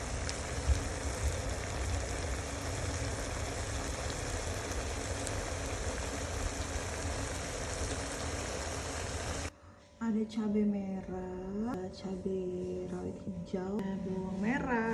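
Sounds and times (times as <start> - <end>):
food sizzling in frying: 0.0 - 9.5.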